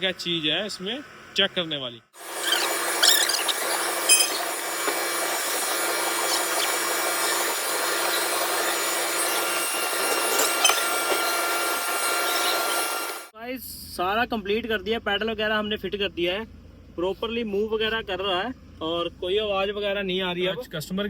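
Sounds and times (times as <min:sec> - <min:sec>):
machine running: 0:02.2 - 0:13.3
short squeaks: 0:02.4 - 0:04.6, 0:08.1 - 0:12.9.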